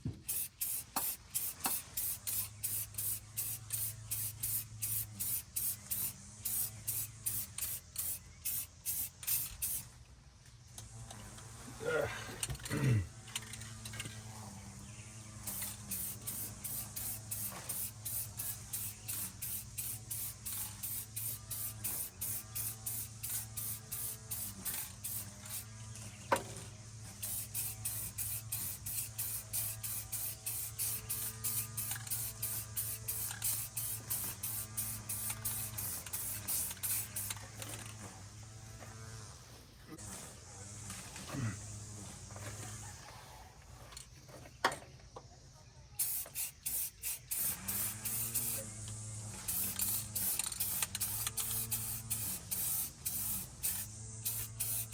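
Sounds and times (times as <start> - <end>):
spray can hissing bursts: 0.0 - 9.9, 15.4 - 25.8, 26.4 - 38.2, 46.0 - 54.9
steady low hum: 0.0 - 43.0, 46.2 - 54.9.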